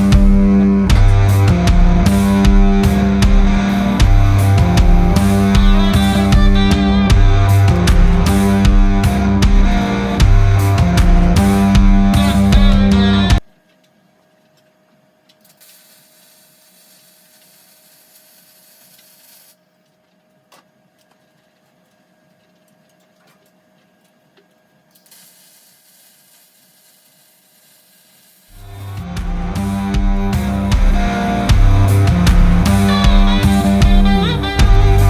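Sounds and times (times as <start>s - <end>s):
welding arc hissing: 0.0s - 13.4s, 15.4s - 19.7s, 24.9s - 35.0s.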